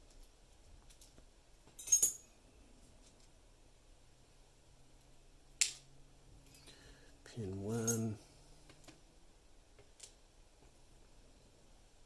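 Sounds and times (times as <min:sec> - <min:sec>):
metal lock pins clinking: 0:01.8 - 0:02.3, 0:07.8 - 0:08.2.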